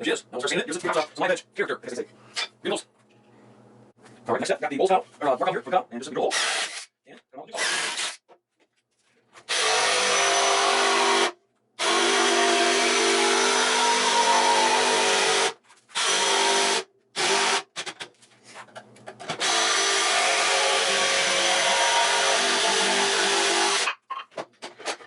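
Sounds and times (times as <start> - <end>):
power tool cutting wood: 9.5 - 17.7, 19.4 - 23.9.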